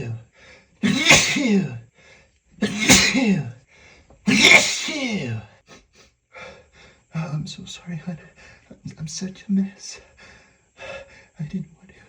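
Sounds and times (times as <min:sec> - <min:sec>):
man sneezing: 0:00.8 - 0:01.8, 0:02.6 - 0:03.5, 0:04.3 - 0:05.9.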